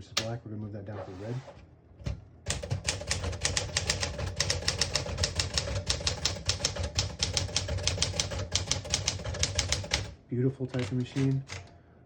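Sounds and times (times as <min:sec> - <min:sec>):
manual typewriter keystrokes: 0:02.5 - 0:10.1, 0:10.7 - 0:11.7.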